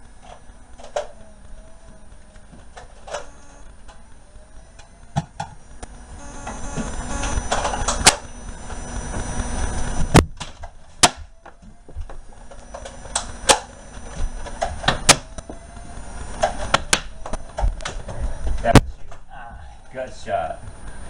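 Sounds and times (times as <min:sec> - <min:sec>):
toy blasters clacking and firing: 0:07.2 - 0:08.3.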